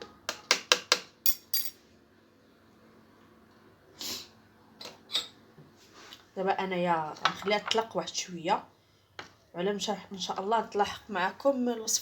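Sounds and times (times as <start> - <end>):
metal spoon clinking on dish: 1.3 - 1.8
soft rustle: 5.8 - 6.3.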